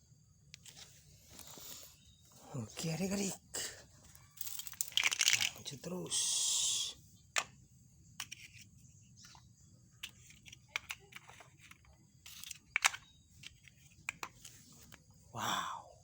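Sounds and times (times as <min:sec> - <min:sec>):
plastic track pieces clicking: 0:04.4 - 0:05.6, 0:10.0 - 0:15.0.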